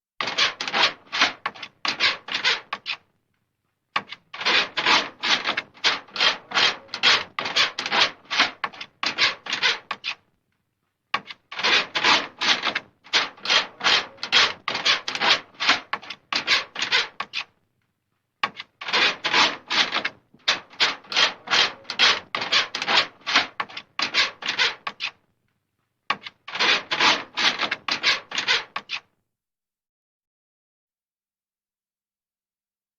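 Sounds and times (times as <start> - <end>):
scratching on wooden door: 0.2 - 3.0, 4.0 - 10.2, 11.2 - 17.5, 18.4 - 25.2, 26.1 - 29.1.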